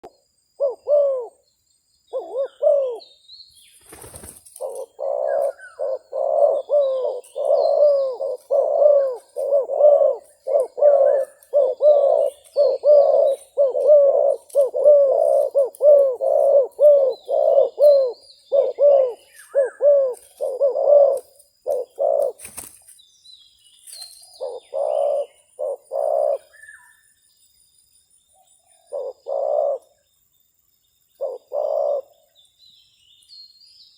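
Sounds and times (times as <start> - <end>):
small birds chirping: 0.0 - 33.9
doves cooing: 0.6 - 1.4, 2.1 - 3.1, 3.9 - 22.7, 24.4 - 26.8, 28.8 - 30.0, 31.2 - 32.3.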